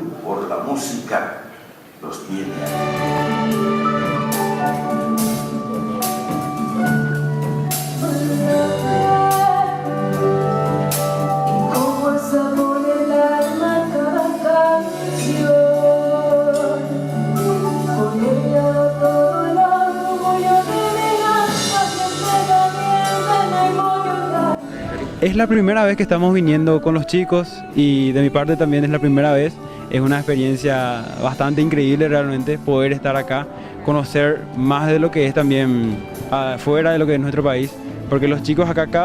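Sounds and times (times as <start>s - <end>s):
orchestra playing: 2.3s - 11.8s.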